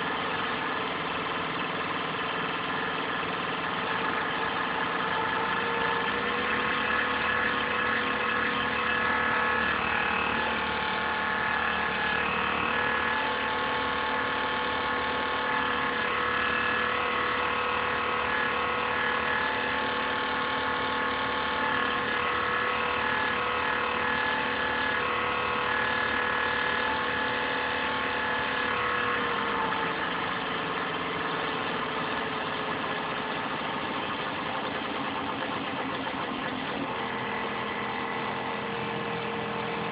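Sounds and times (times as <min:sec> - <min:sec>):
laptop fan whining: 0:21.1 - 0:39.9.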